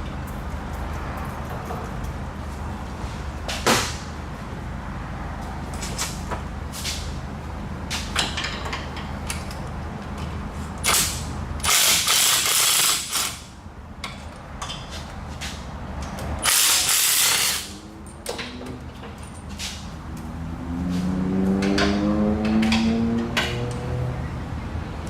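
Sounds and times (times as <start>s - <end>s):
ratchet clicking: 10.8s - 13.5s, 16.4s - 17.8s.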